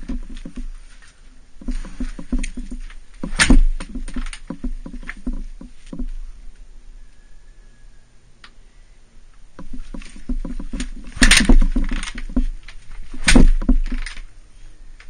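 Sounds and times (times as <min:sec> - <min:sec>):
dirt bike engine turning over: 0:00.0 - 0:06.2, 0:09.6 - 0:14.3.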